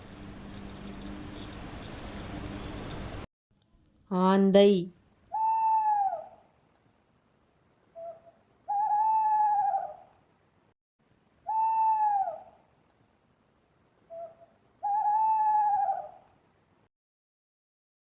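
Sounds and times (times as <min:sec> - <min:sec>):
owl hooting: 0:05.3 - 0:06.4, 0:08.0 - 0:10.1, 0:11.4 - 0:12.6, 0:14.1 - 0:16.3.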